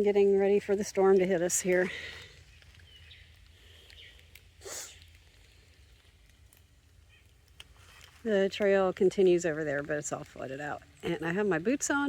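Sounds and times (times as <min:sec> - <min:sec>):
outdoor ambience: 0:00.0 - 0:12.0
sniff or snort of breath: 0:04.6 - 0:05.0.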